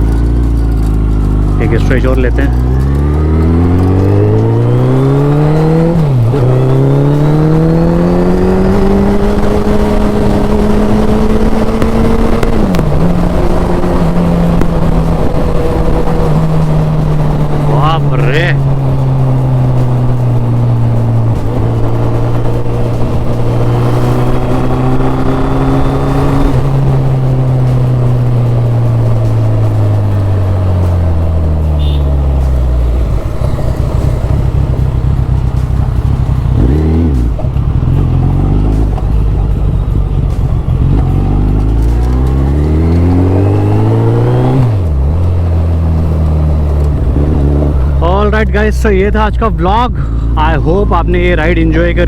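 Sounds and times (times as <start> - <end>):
gear change: 0.0 - 52.0
motorcycle engine running: 0.0 - 52.0.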